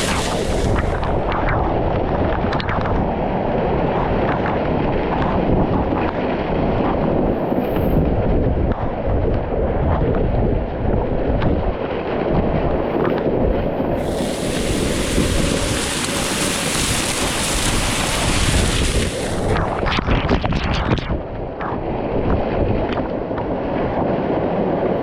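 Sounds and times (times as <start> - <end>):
loud rushing hiss: 0.0 - 1.0, 14.0 - 19.8
wind buffeting microphone: 0.0 - 25.0.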